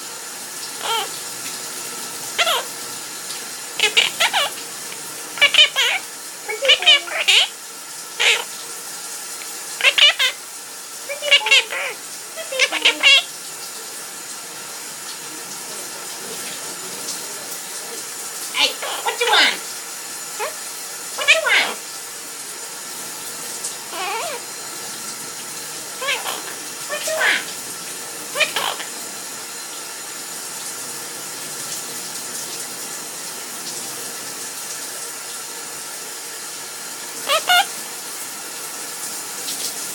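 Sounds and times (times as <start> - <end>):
steady hiss like running water: 0.0 - 39.9
parrot warbling: 0.8 - 1.2, 2.2 - 2.8, 3.8 - 8.6, 9.7 - 10.4, 11.0 - 13.3, 18.5 - 19.7, 20.3 - 21.9, 23.9 - 24.6, 25.9 - 27.6, 28.2 - 29.0, 37.2 - 37.8.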